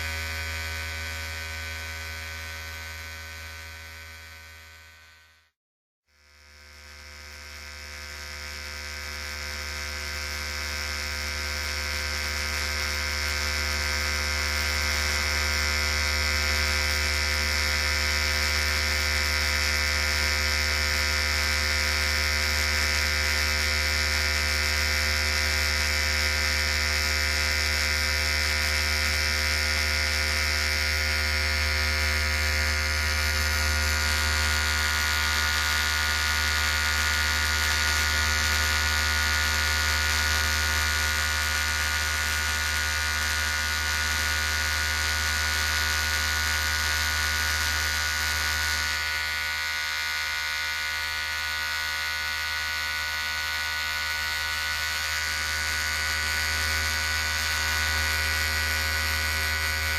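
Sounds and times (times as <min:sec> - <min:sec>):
electric hair clippers buzzing: 0:00.0 - 0:05.5, 0:06.1 - 0:59.9.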